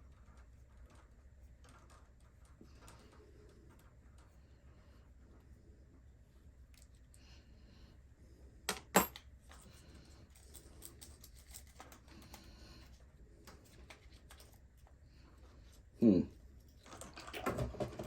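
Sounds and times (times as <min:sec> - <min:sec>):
small tools handled on a bench: 0:08.7 - 0:09.7.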